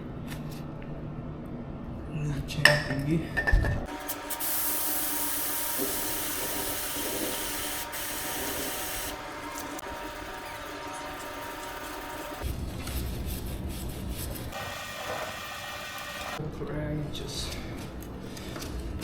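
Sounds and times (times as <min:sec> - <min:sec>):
aerosol spray hissing: 0:03.9 - 0:12.4, 0:14.5 - 0:16.4.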